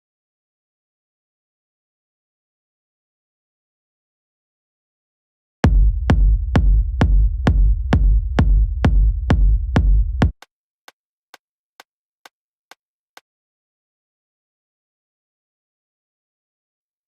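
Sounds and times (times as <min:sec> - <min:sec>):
deep sub-bass: 0:05.6 - 0:10.3
drum machine kick: 0:05.6 - 0:10.4.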